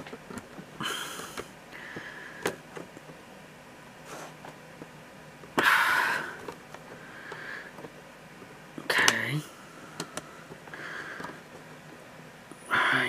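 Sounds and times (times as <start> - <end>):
clicks and taps of parts: 10.0 - 10.6, 11.2 - 11.7
breaths near microphone: 10.2 - 11.4.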